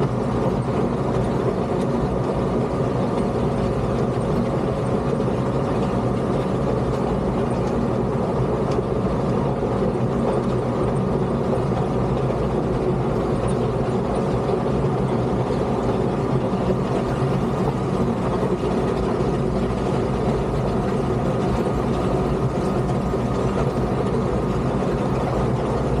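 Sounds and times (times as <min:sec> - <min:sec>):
diesel engine running steadily: 0:00.0 - 0:26.0.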